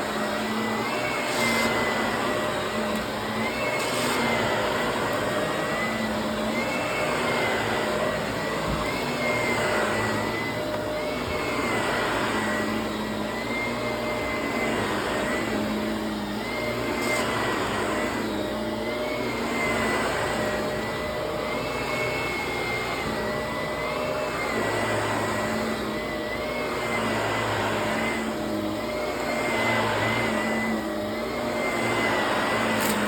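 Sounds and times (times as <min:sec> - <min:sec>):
vacuum cleaner running: 0:00.0 - 0:33.0.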